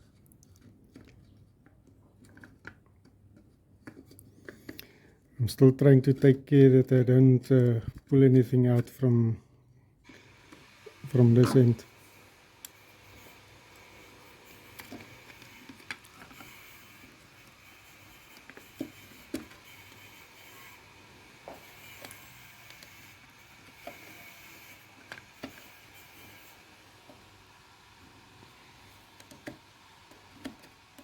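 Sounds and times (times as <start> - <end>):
plastic parts clicking and tapping: 0.2 - 4.9, 28.9 - 31.0.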